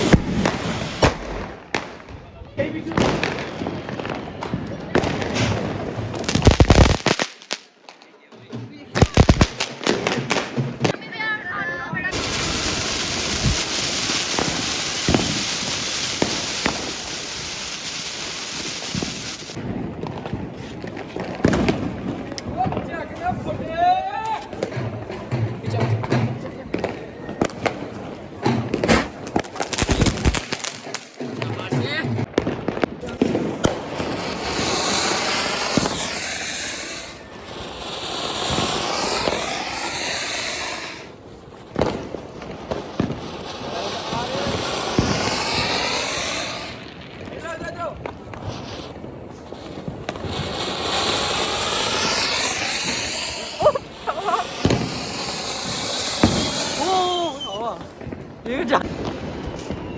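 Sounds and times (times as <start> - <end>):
fireworks hissing crackle: 0.0 - 8.1, 9.0 - 11.0, 11.9 - 31.4, 32.3 - 59.9
fireworks popping: 0.0 - 59.9
dense hiss: 12.1 - 19.6, 33.8 - 41.2, 43.3 - 46.9, 48.4 - 57.6.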